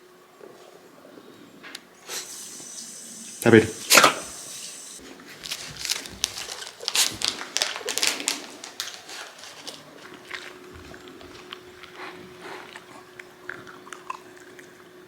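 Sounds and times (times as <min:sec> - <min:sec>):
pet crunching dry kibble: 0:05.0 - 0:15.0.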